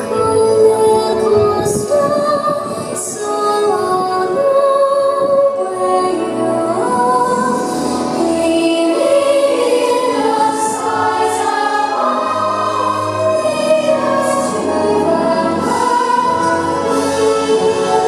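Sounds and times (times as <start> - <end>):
soundtrack music: 0.0 - 18.0
choir singing: 4.4 - 18.0.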